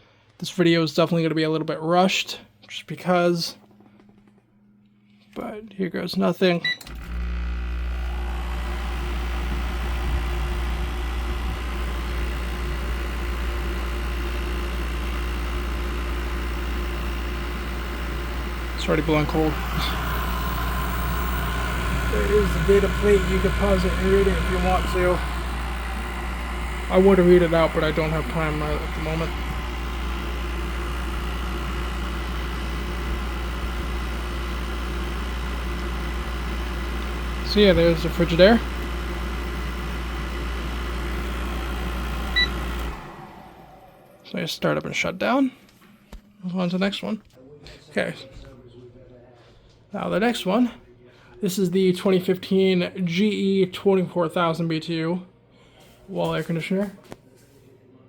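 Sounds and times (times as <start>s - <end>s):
air conditioner running: 6.9s - 44.3s.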